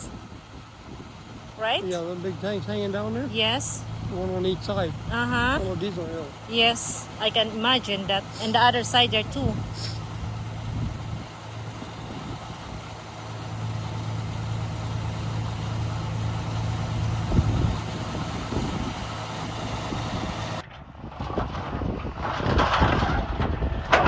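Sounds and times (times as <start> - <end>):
diesel engine idling: 0.0 - 20.6
wind buffeting microphone: 0.0 - 24.0.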